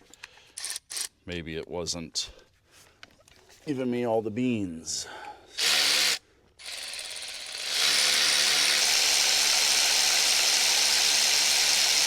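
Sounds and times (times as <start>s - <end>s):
handheld power tool running: 5.6s - 12.0s.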